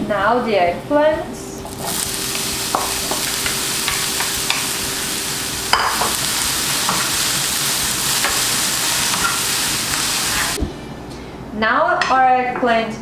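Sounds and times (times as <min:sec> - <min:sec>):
food sizzling in oil: 0:01.6 - 0:10.6.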